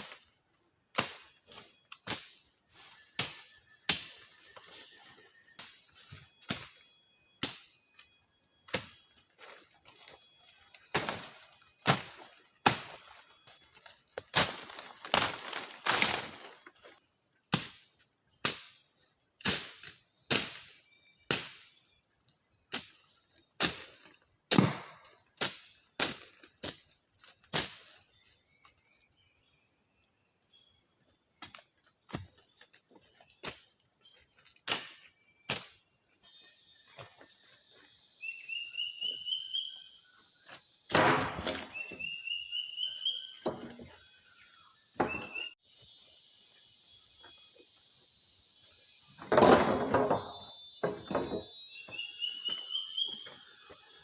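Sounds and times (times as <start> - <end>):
high insect drone: 27.0 - 54.0
rising whistled bird calls: 38.2 - 40.2, 41.7 - 45.6, 51.6 - 53.5.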